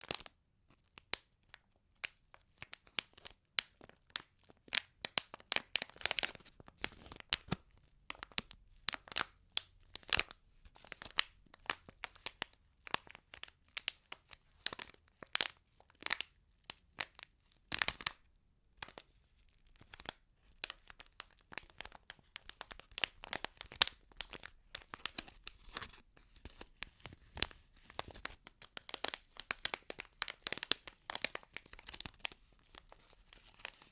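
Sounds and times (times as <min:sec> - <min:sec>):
crinkling and sticky peeling: 0:18.8 - 0:33.9.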